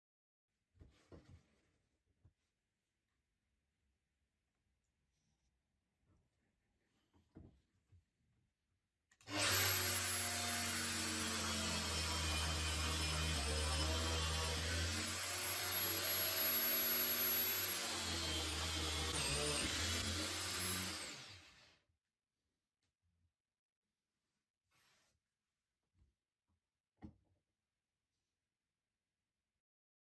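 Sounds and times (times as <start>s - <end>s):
power tool motor whining: 9.3s - 21.7s.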